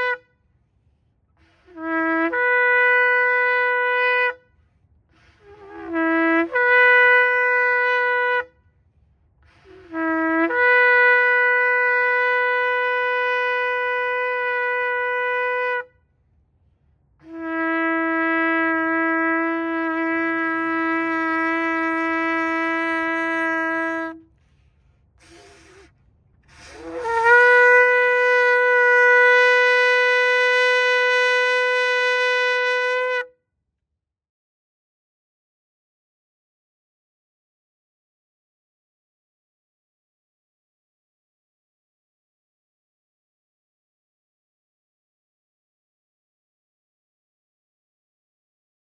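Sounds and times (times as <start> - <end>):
shofar long blasts: 0.0 - 0.4, 1.4 - 8.7, 9.5 - 16.0, 17.2 - 24.4, 25.2 - 33.4.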